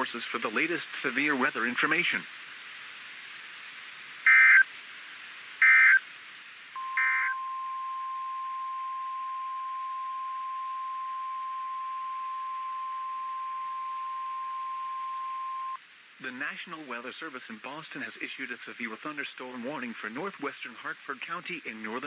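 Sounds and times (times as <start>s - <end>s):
warbling data tone bursts: 4.3s - 4.7s, 5.6s - 6.0s, 6.8s - 15.8s
steady warning alert tone: 6.8s - 15.8s.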